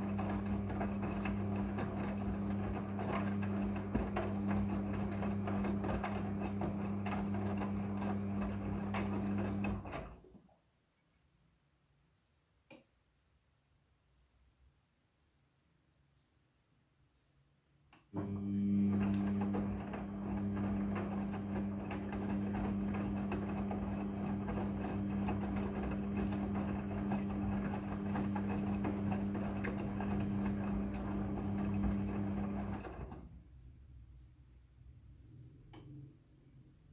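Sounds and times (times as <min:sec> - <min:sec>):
washing machine churning: 0:00.0 - 0:10.2, 0:18.2 - 0:33.3.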